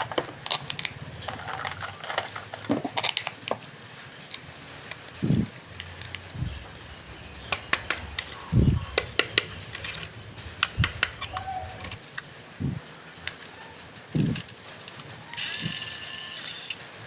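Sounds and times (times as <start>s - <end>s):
toy packaging clicks and taps: 0.0s - 6.2s, 7.5s - 12.2s.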